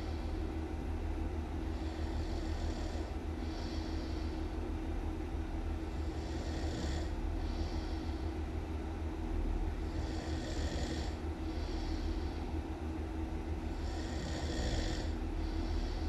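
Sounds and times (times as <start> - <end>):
person snoring loudly: 6.2 - 7.1, 9.9 - 11.2, 13.8 - 15.2.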